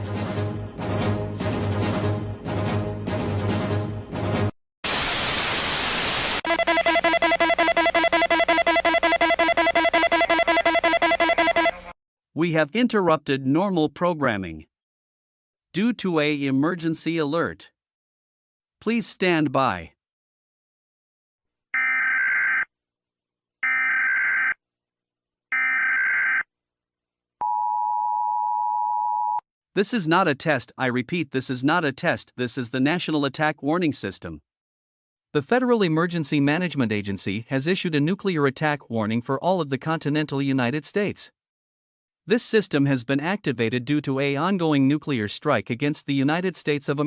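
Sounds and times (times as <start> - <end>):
static hiss burst: 4.8 - 6.5
buzzy electronic alert tone: 4.9 - 11.9.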